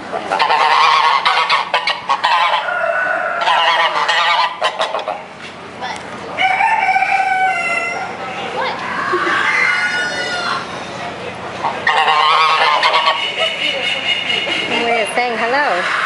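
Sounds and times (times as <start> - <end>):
geese honking: 0.0 - 5.3, 9.0 - 16.0.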